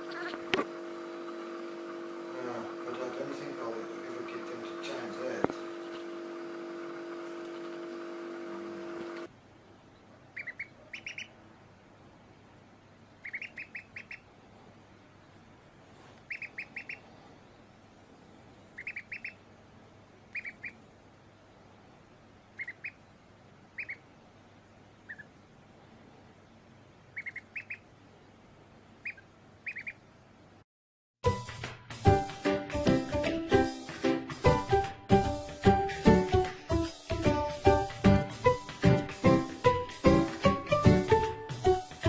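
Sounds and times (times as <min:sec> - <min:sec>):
mechanical hum: 0:00.0 - 0:30.6
duck quacking: 0:10.4 - 0:11.3, 0:13.2 - 0:14.2, 0:16.3 - 0:17.0, 0:18.8 - 0:19.4, 0:20.3 - 0:20.8, 0:23.8 - 0:24.0, 0:27.1 - 0:27.8, 0:29.0 - 0:30.0.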